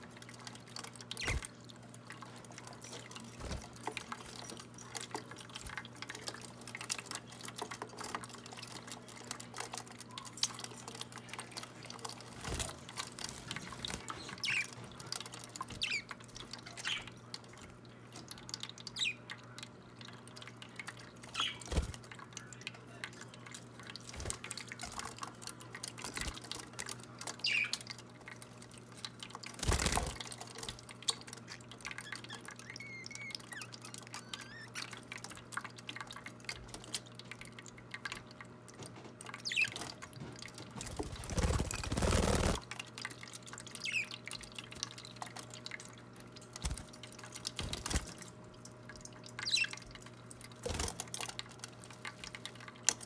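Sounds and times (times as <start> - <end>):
fountain water trickling: 0.0 - 53.0
low steady hum: 0.0 - 53.0
water splashes: 10.8 - 53.0.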